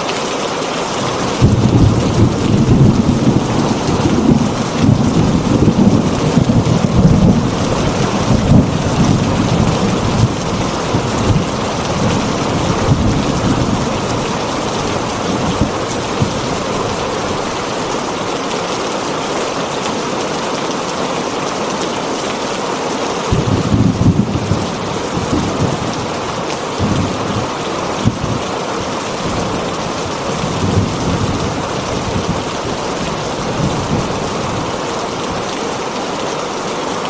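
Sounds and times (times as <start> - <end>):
heavy rain on a tin roof: 0.0 - 37.0
low rumble of thunder: 1.0 - 17.6, 23.3 - 28.4, 29.2 - 35.4.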